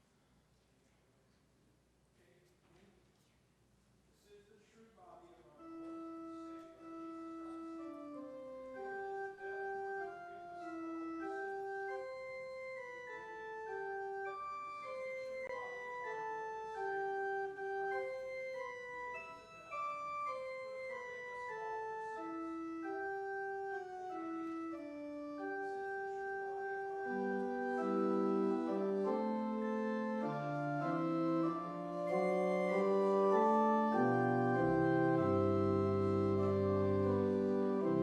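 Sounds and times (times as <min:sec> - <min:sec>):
church organ playing: 0:05.5 - 0:38.0.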